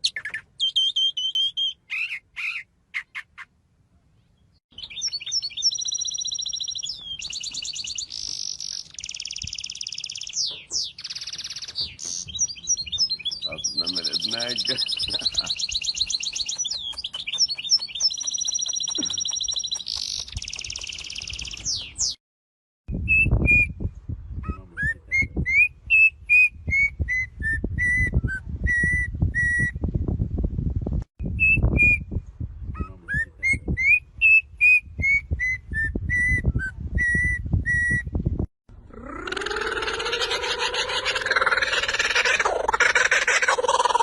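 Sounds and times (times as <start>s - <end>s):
bird singing: 0.0s - 3.5s, 4.2s - 22.2s.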